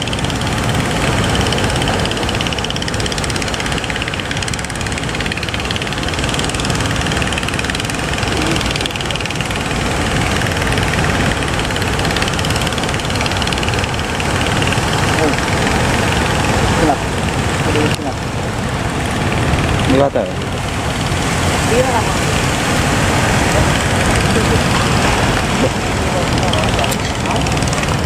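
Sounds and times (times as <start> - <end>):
boat engine running: 0.0 - 28.0
loud rush of noise: 0.0 - 28.0.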